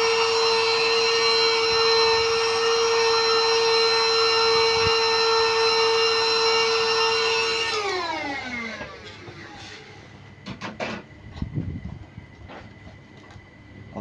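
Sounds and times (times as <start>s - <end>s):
small vacuum cleaner whining: 0.0s - 14.0s.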